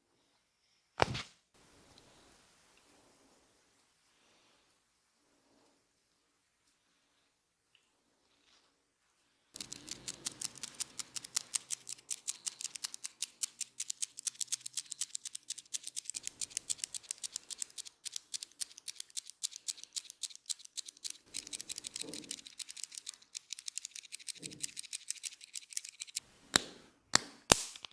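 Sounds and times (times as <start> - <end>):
crisp clicks and snaps: 9.6 - 27.9
sharp crack: 26.6 - 27.9.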